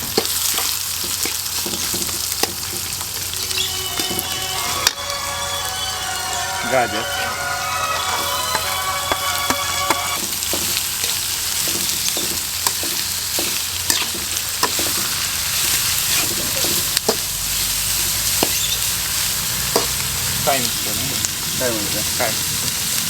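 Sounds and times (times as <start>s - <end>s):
vegetables sizzling in oil: 0.0s - 23.0s
spatula scraping a pan: 3.2s - 10.2s
light background music: 3.4s - 10.6s.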